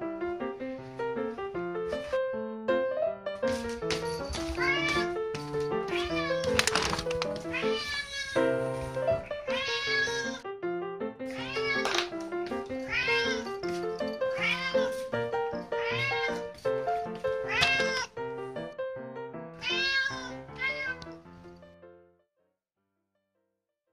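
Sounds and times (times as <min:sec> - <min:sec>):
background music: 0:00.0 - 0:21.5
cat meowing: 0:04.5 - 0:05.2, 0:05.9 - 0:06.7, 0:07.5 - 0:08.5, 0:09.2 - 0:10.4, 0:11.3 - 0:12.1, 0:12.8 - 0:16.5, 0:17.4 - 0:18.2, 0:19.6 - 0:21.2.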